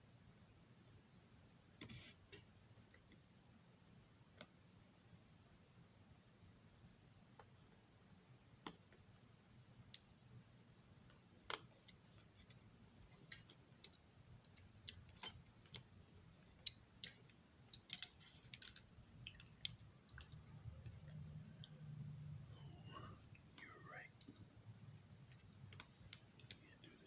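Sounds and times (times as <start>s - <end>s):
steady low hum: 7.6s - 27.0s.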